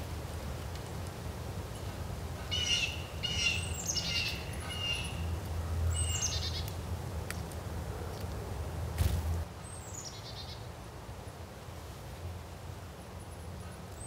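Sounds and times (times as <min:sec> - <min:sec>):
songbirds chirping: 0:01.7 - 0:10.7.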